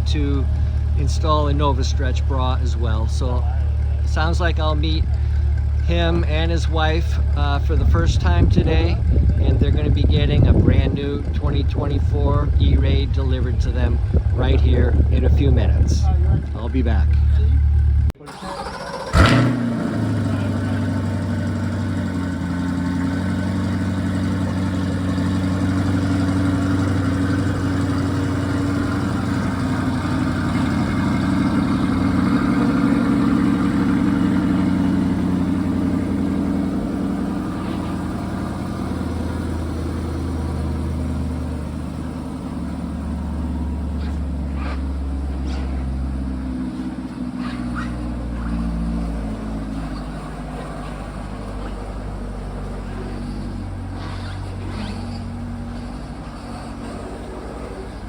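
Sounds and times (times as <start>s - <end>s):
car engine idling: 0.0s - 58.0s.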